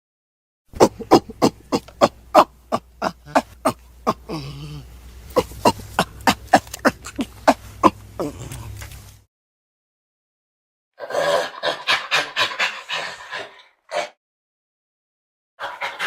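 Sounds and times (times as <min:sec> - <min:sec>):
low drawn-out grunt: 0:00.7 - 0:08.9
faint low hum: 0:00.7 - 0:09.3.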